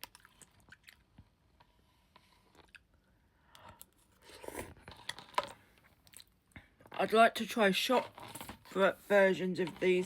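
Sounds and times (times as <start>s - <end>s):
person chewing noodles: 0.0s - 6.6s.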